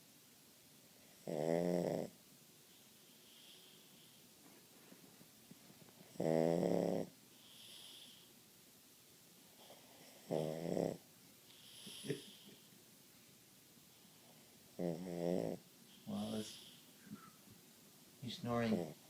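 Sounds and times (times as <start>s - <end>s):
dog snoring: 1.0s - 2.2s, 6.0s - 8.3s, 9.6s - 12.4s, 14.2s - 16.8s, 18.6s - 19.0s.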